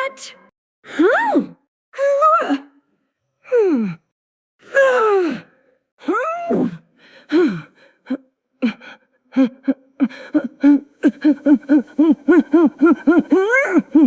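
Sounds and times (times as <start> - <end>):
woman gasping: 10.0 - 14.0.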